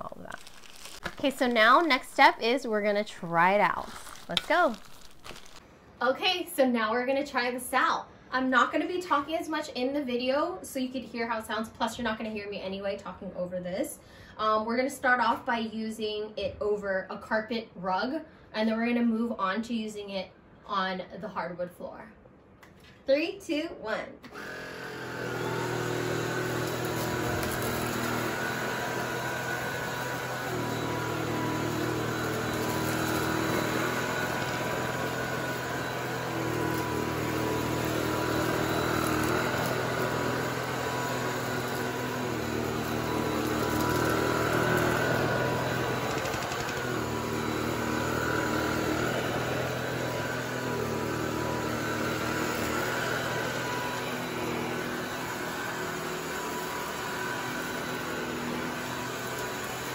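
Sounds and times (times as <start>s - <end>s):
vacuum cleaner motor running: 0.0s - 5.6s, 24.2s - 59.9s.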